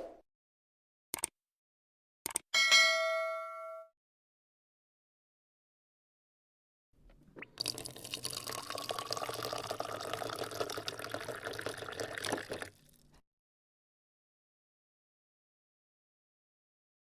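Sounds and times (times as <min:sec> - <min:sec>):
water pouring from dispenser: 0:07.3 - 0:13.1.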